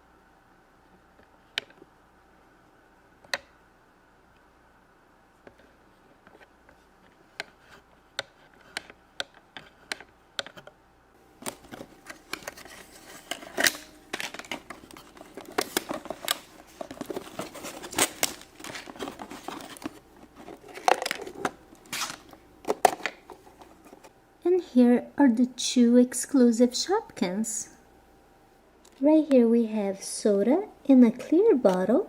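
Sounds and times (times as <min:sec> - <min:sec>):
plastic packaging crinkling: 0:11.4 - 0:24.1.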